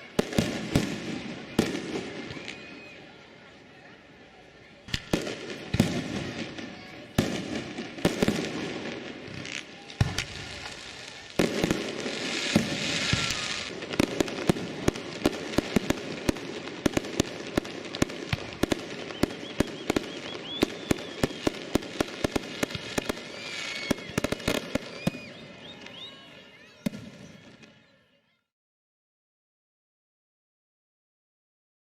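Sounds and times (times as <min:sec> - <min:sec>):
firework bangs: 0:00.0 - 0:02.8, 0:04.9 - 0:25.9
fireworks crackling: 0:00.0 - 0:03.8, 0:04.4 - 0:27.8.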